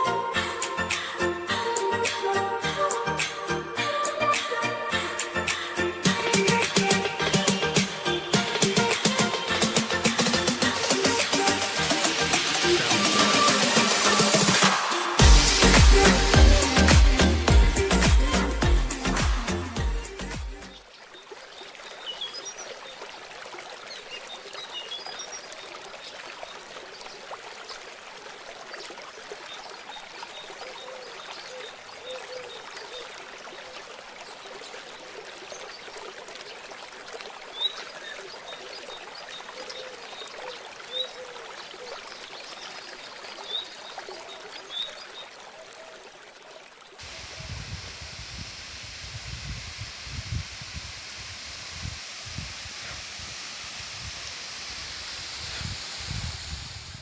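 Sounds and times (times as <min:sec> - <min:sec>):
waterfall rushing: 0:06.1 - 0:49.0.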